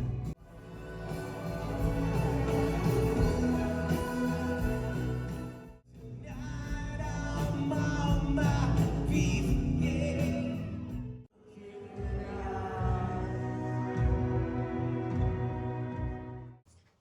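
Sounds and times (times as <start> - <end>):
music with singing: 0.0 - 10.9.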